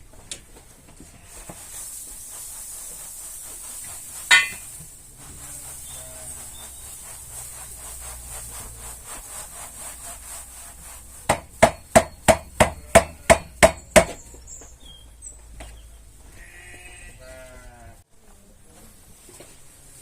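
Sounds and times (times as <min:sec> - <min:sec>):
light tapping strokes: 0:01.4 - 0:14.1
loud sharp knocks: 0:11.3 - 0:14.2.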